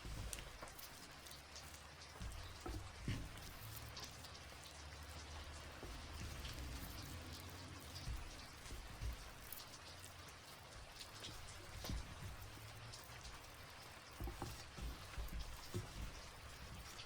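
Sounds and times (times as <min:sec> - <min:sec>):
rain pattering: 0:00.0 - 0:17.0
soft low thumps: 0:05.2 - 0:09.8.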